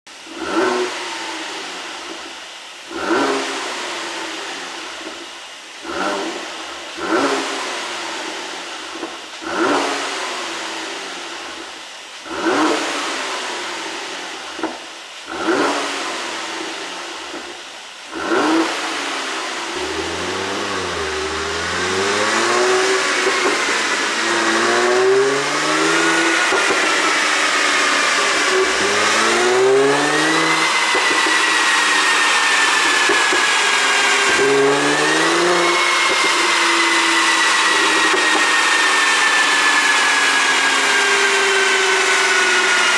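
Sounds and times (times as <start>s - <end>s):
car exhaust revving and popping: 19.6s - 40.2s.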